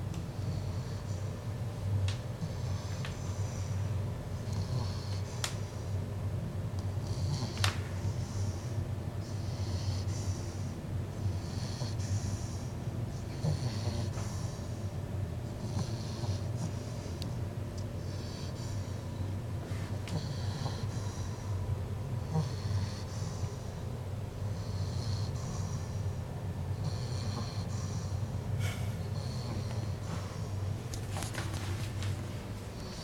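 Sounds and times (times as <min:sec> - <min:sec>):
puppy snoring with whistling: 0:04.4 - 0:05.4, 0:07.0 - 0:07.6, 0:09.2 - 0:14.6, 0:15.6 - 0:16.8, 0:20.0 - 0:21.4, 0:22.3 - 0:23.8, 0:24.5 - 0:26.1, 0:26.8 - 0:28.3.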